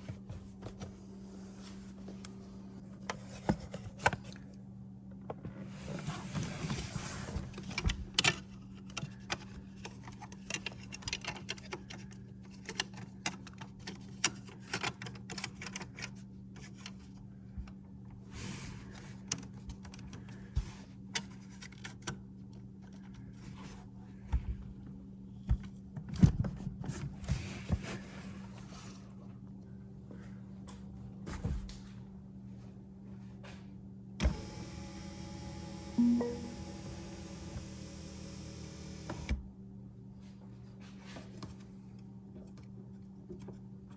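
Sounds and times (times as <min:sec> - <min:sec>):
steady low hum: 0:34.0 - 0:40.9.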